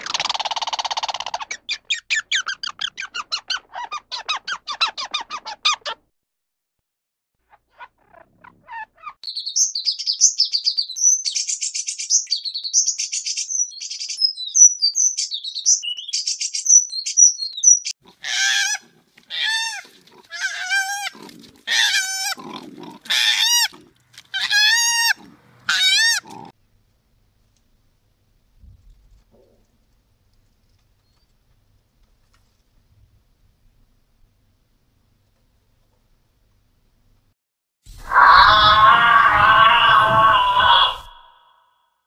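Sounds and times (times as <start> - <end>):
animal chirping and twittering: 0.0 - 6.0, 7.5 - 26.5, 37.9 - 41.6
animal squealing calls: 7.7 - 9.2, 18.1 - 26.5, 37.9 - 41.7.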